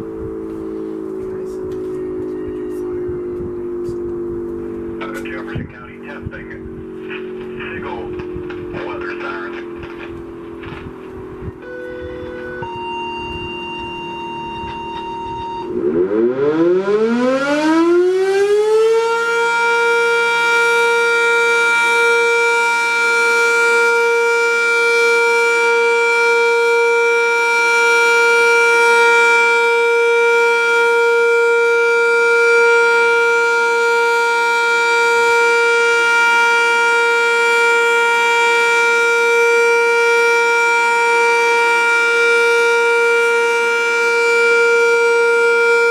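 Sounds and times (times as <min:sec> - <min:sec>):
warning siren wailing: 0:00.0 - 0:45.9
radio tone-out tone: 0:00.5 - 0:16.4.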